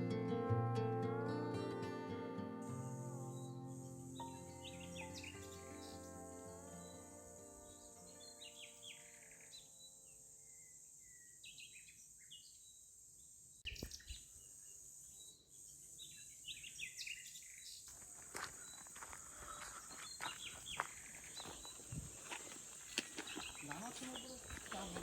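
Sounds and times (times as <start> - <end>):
background music: 0.0 - 9.8
high insect drone: 1.6 - 11.2, 17.9 - 25.0
bird chirps: 2.9 - 12.8, 13.6 - 17.9, 18.5 - 22.4, 23.1 - 25.0.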